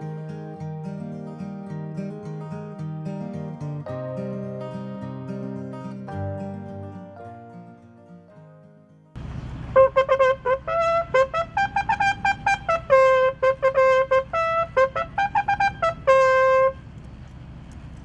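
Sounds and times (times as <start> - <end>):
guitar music: 0.0 - 9.2, 9.8 - 16.8
bugle call: 9.7 - 16.9.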